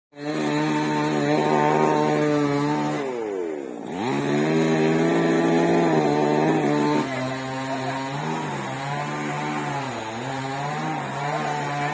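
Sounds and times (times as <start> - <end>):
chainsaw engine revving: 0.2 - 11.9.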